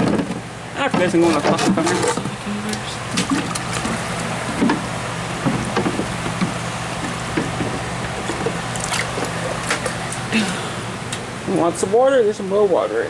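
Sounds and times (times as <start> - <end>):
low machine hum: 0.0 - 13.0
knocks and clatter: 5.4 - 8.6.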